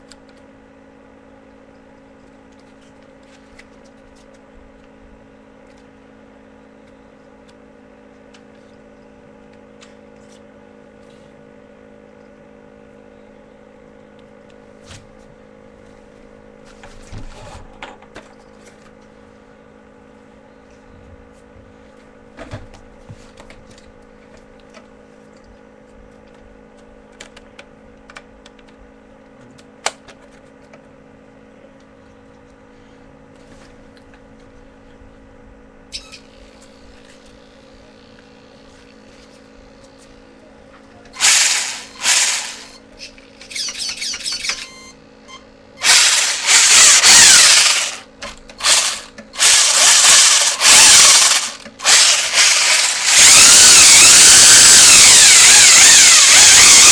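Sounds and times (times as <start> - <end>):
faint steady hum: 0.0 - 43.6
toy car motor whirring: 41.2 - 44.9, 45.8 - 56.9.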